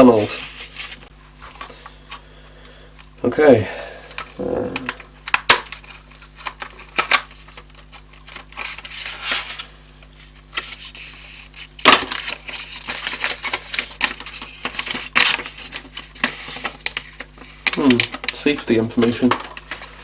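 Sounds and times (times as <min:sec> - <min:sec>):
packaging clicks and rustling: 0:11.8 - 0:20.0.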